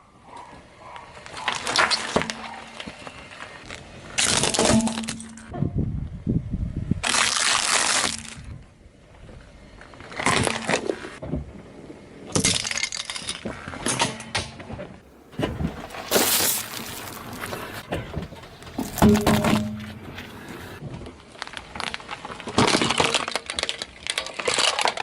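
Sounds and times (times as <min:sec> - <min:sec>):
objects crunching under tyre: 0:15.0 - 0:25.0.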